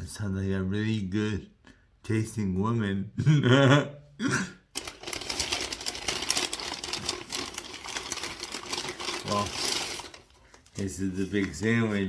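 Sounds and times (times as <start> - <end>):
paper wrapper crinkling: 4.7 - 12.0.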